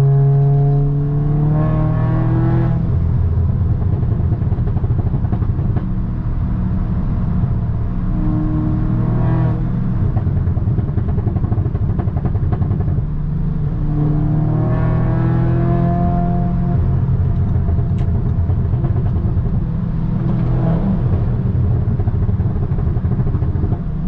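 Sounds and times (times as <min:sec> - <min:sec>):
car engine accelerating: 0:00.0 - 0:24.0.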